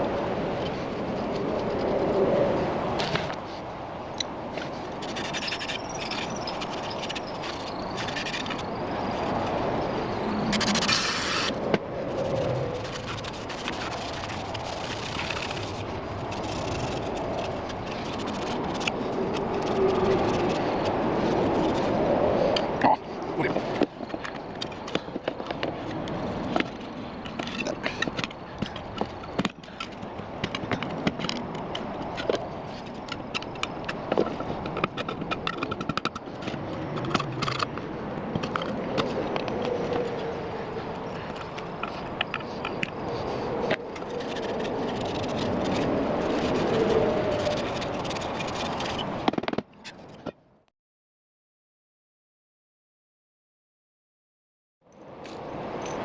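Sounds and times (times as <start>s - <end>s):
hand tools scraping: 4.6s - 9.6s, 12.2s - 22.7s, 23.4s - 37.7s, 41.1s - 50.3s.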